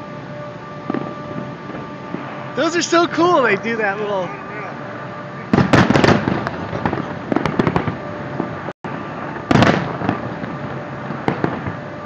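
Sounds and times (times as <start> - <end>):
fireworks bursting: 5.4 - 12.0
fireworks crackling pops: 5.6 - 8.6, 9.2 - 11.8.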